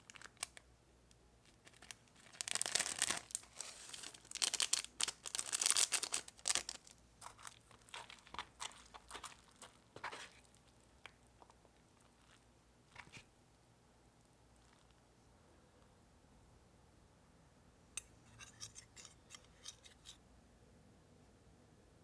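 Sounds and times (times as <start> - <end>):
plastic packaging crinkling and tearing: 0.0 - 0.6, 1.4 - 10.7.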